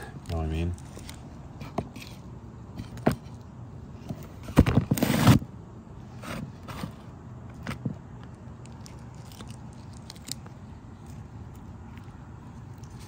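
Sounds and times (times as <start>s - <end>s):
sealant scraping on metal roof: 4.4s - 5.5s.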